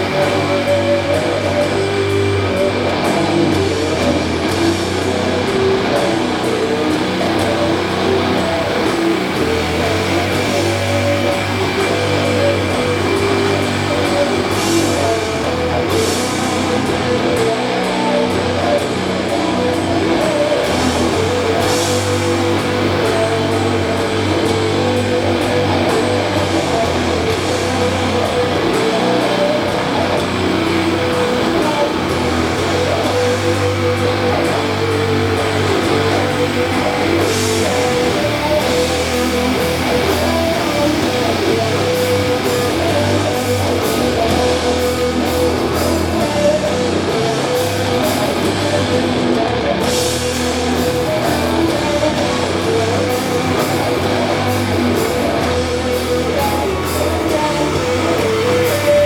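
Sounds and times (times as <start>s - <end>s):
doom metal band playing loud: 0.0s - 59.0s.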